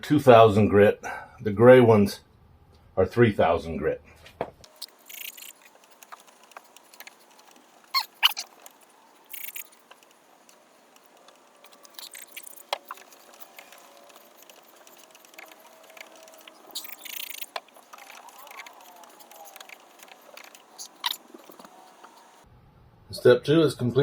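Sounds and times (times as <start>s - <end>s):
small clicks and scuffs: 4.2s - 22.4s.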